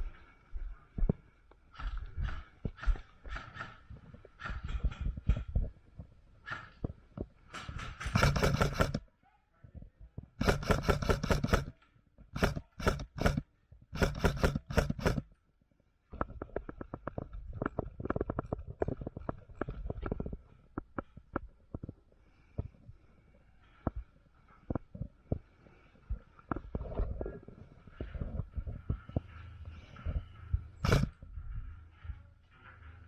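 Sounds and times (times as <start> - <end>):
airsoft gun bursts: 8.0 - 9.0, 10.4 - 15.3, 30.8 - 31.2.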